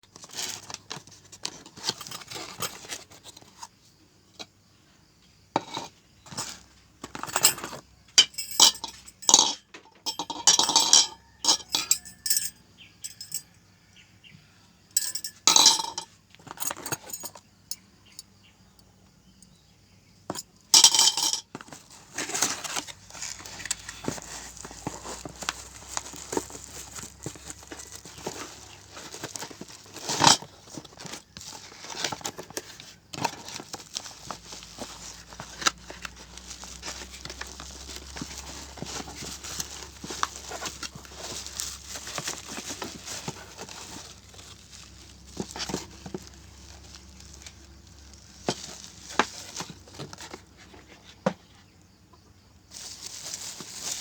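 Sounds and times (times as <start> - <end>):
hard objects clinking: 5.6 - 13.5, 15.0 - 17.8, 20.3 - 50.4
packaging rustling: 21.5 - 50.9, 52.7 - 54.0.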